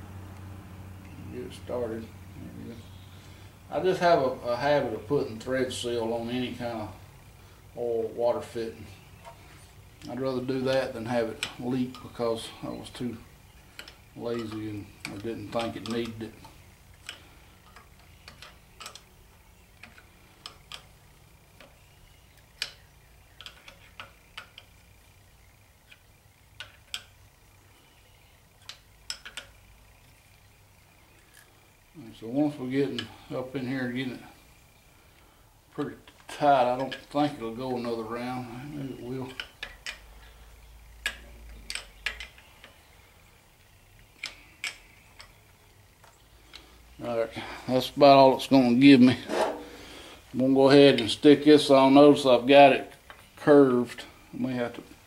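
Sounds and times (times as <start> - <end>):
faint low hum: 0.0 - 55.0
wrench clicking on metal: 17.0 - 19.1, 21.6 - 24.8, 25.9 - 27.2, 28.6 - 29.7, 41.0 - 42.8
wrench clicking on metal fitting: 17.0 - 19.1.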